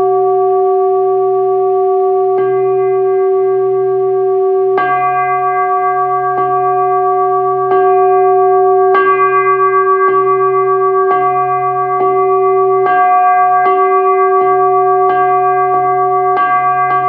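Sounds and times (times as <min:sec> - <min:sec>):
prayer bell ringing: 0:00.0 - 0:17.0.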